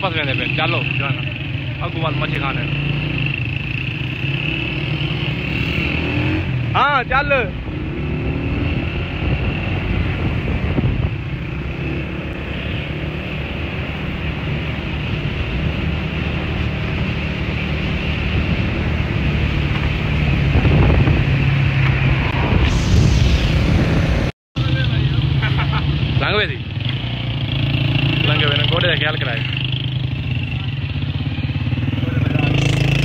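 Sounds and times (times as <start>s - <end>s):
wind buffeting microphone: 9.2s - 11.4s, 20.0s - 24.3s.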